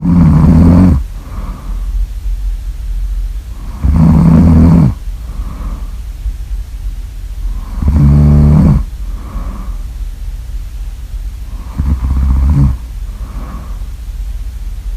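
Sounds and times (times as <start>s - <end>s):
loud low snoring: 0.0s - 1.8s, 3.6s - 6.0s, 7.5s - 9.8s, 11.5s - 13.9s
quiet breathing: 0.0s - 14.9s.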